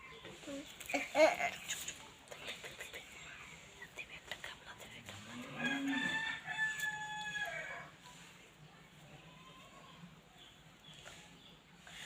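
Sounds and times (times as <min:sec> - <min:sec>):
rooster crowing: 0:05.4 - 0:07.9.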